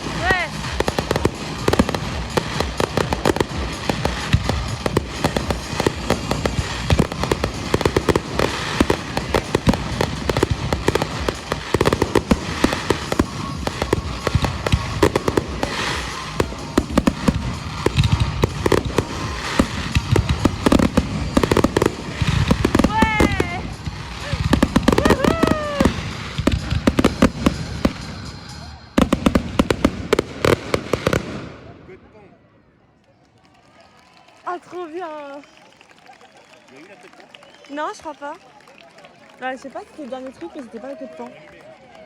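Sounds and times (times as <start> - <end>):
music: 0.0 - 31.6
fireworks bangs and crackling: 0.0 - 32.4, 34.6 - 42.0.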